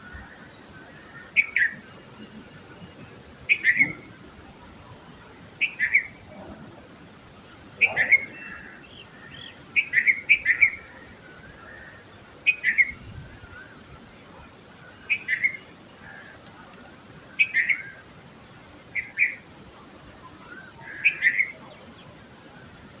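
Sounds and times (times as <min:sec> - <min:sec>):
bird singing bubbly phrases: 0:07.7 - 0:10.9.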